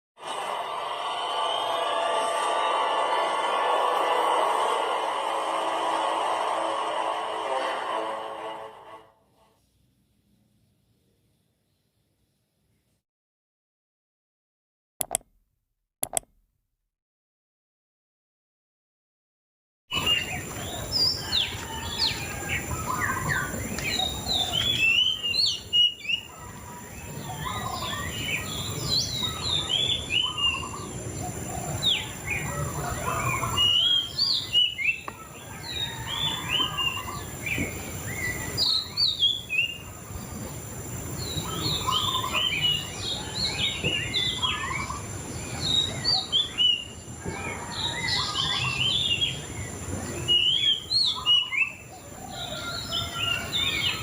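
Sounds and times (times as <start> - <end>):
songbird chirping and whistling: 19.9 - 40.5, 41.1 - 49.5, 50.1 - 54.0.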